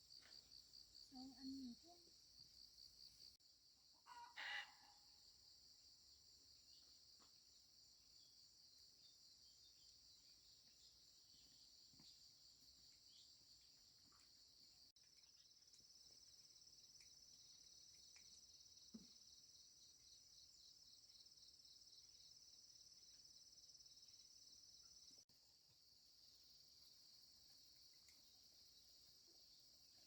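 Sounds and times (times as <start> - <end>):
chicken call: 4.1 - 5.0.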